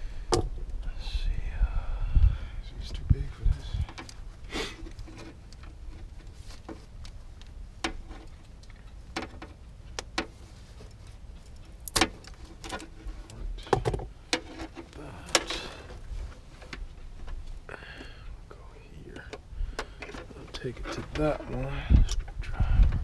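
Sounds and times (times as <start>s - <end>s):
low steady rumble: 0.0s - 23.0s
short rustle: 3.2s - 7.4s
hand tools and metal parts clinking: 3.6s - 17.6s.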